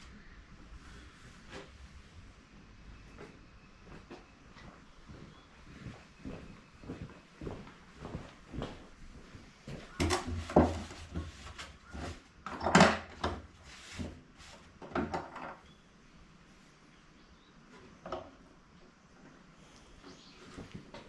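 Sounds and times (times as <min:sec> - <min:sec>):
wooden furniture knocking and scraping: 0:09.9 - 0:14.2, 0:14.8 - 0:15.6.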